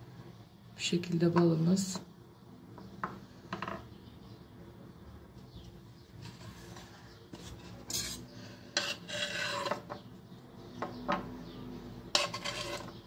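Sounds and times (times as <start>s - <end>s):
utensil scraping: 6.2s - 10.1s, 12.1s - 13.0s.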